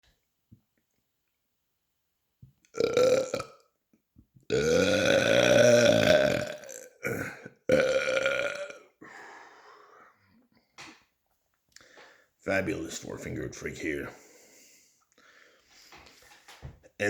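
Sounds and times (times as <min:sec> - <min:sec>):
man belching: 0:02.8 - 0:03.6, 0:04.5 - 0:08.9.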